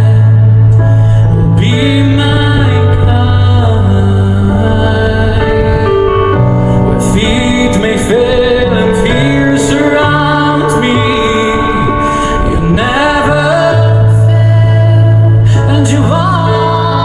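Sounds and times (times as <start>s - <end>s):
background music sustained notes: 0.0s - 17.0s
soft singing voice: 6.9s - 17.0s.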